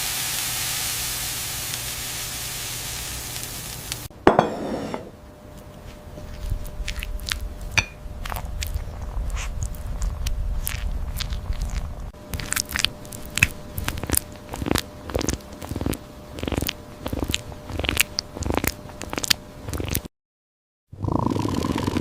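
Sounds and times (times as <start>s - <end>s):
crisp biting and chewing: 8.2s - 20.1s.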